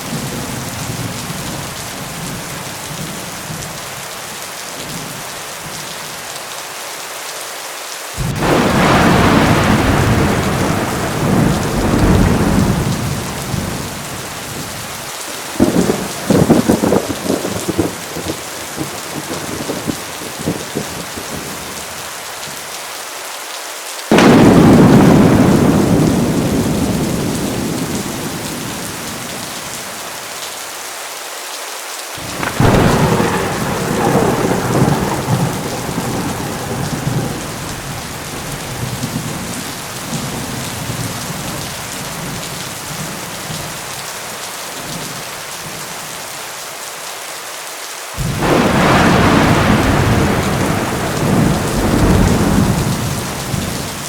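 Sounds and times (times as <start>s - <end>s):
heavy rain falling: 0.0s - 54.0s
thunder rumbling: 8.2s - 21.8s, 24.1s - 30.1s, 32.2s - 43.8s, 48.2s - 54.0s.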